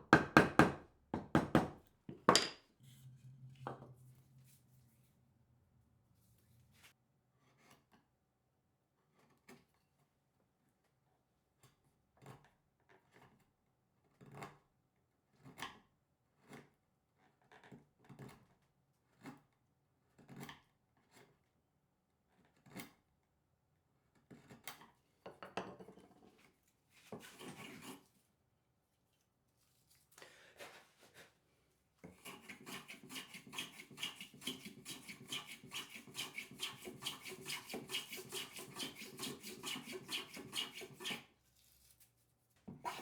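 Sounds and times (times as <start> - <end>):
hand tool strokes on wood: 32.0 - 41.3
scraping wood: 32.0 - 41.3.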